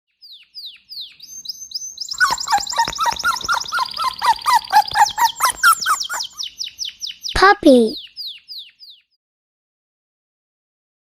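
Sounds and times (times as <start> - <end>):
high-pitched chirping calls: 0.4 - 9.0.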